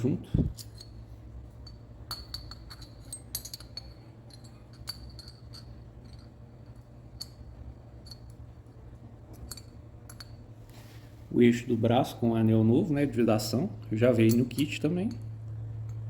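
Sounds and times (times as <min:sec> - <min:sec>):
steady low hum: 0:00.0 - 0:16.0
small metal parts clinking: 0:00.5 - 0:08.4, 0:09.3 - 0:10.4, 0:14.0 - 0:16.0.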